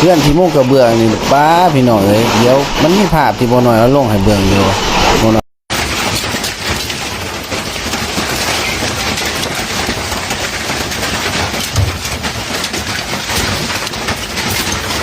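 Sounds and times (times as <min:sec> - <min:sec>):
hailstones pelting down: 0:00.0 - 0:15.0
heavy rain: 0:00.0 - 0:15.0.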